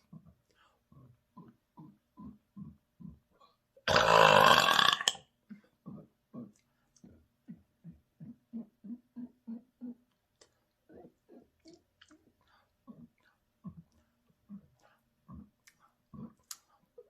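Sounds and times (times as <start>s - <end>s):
low throat gulps: 0.0s - 17.0s
person burping loudly: 3.8s - 5.2s.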